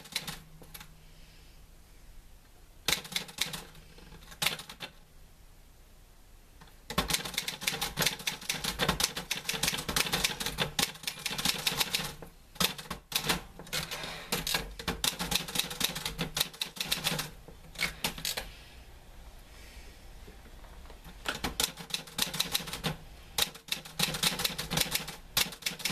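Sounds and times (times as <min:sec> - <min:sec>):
typewriter keys striking: 0:00.0 - 0:00.8, 0:02.9 - 0:04.9, 0:06.9 - 0:18.5, 0:21.0 - 0:25.9.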